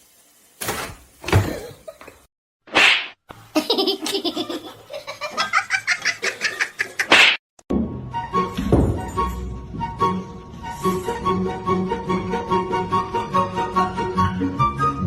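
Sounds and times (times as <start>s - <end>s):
person laughing: 3.5s - 7.1s.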